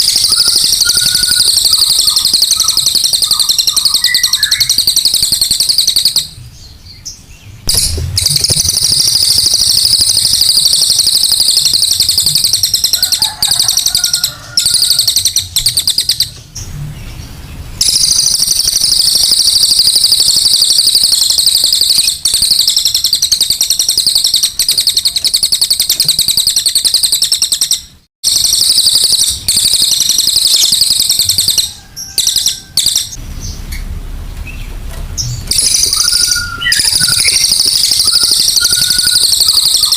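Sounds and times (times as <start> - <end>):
songbird harsh chattering song: 0.0 - 13.0, 29.0 - 39.9.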